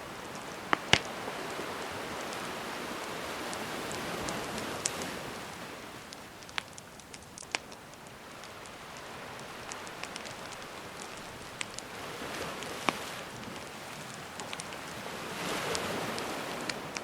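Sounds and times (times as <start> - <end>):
campfire crackling and popping: 0.0 - 17.0
gentle sea waves: 0.0 - 17.0.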